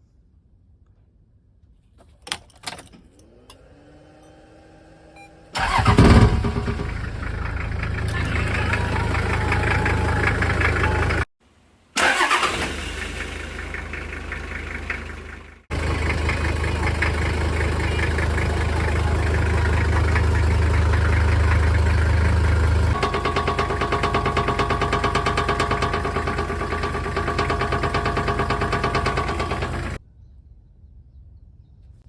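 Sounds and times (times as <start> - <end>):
engine idling: 5.6 - 11.3, 12.0 - 30.0
starter clicks: 22.8 - 30.0.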